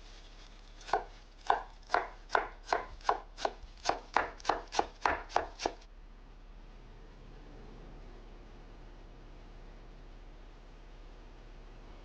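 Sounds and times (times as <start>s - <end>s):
knife chopping parsley: 0.7s - 5.8s.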